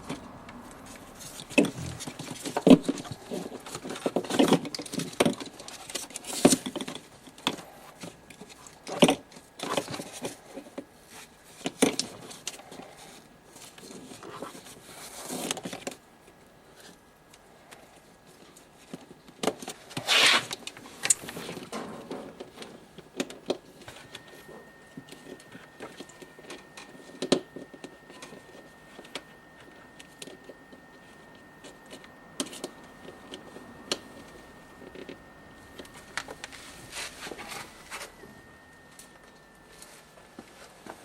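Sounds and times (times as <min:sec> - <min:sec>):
parts clicking and scraping: 0:00.0 - 0:16.0
faint high whine: 0:20.0 - 0:41.0.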